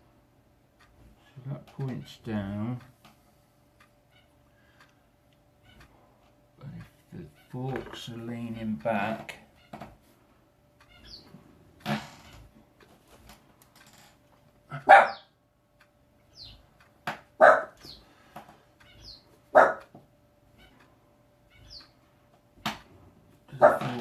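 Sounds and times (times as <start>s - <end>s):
dog barking: 14.7s - 15.3s, 17.4s - 17.8s, 19.6s - 19.8s, 23.6s - 23.9s.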